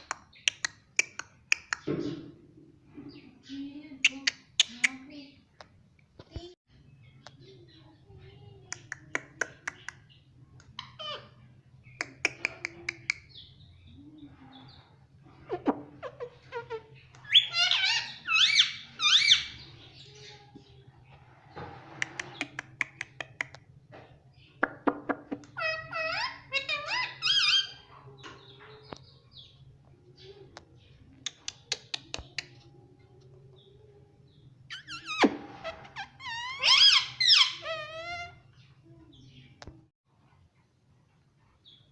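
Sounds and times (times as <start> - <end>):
parrot chirping: 10.7 - 13.5, 15.4 - 19.8, 25.2 - 28.0, 34.7 - 38.6
parakeet squawking: 15.4 - 19.6, 25.5 - 27.9, 34.7 - 38.5.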